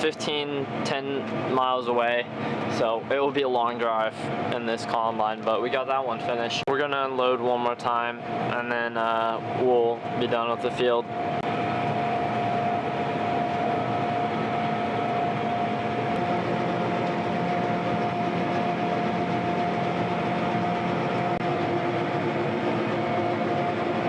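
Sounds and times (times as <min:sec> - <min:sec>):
combine harvester running: 0:00.0 - 0:24.0
mid-pitched mechanical whine: 0:00.0 - 0:24.0.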